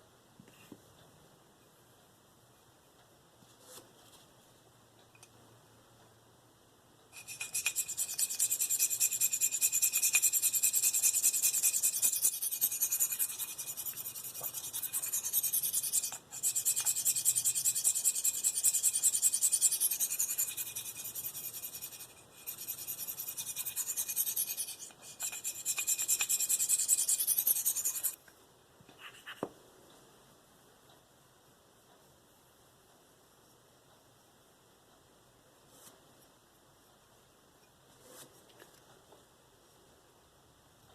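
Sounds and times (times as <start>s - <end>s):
knife scraping on sharpening stone: 7.2s - 28.2s.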